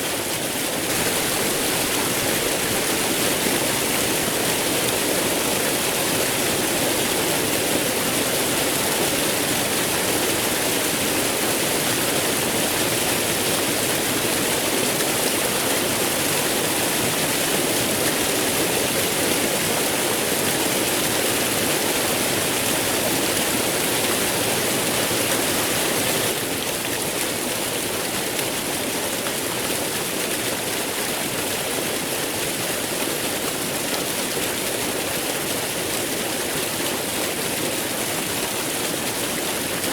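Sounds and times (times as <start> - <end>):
waterfall rushing: 0.9 - 6.4.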